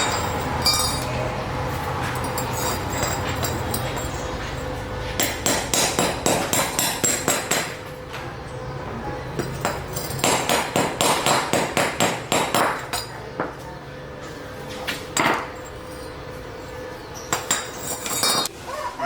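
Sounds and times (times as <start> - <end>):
rapid metallic knocks: 9.4 - 13.1.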